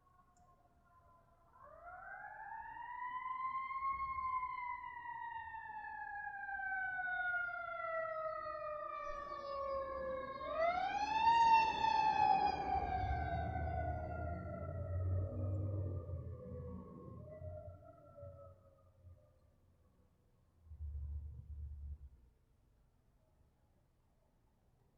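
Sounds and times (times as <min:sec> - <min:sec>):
fire engine siren wailing: 0:01.6 - 0:19.1
low rumble: 0:20.7 - 0:22.2.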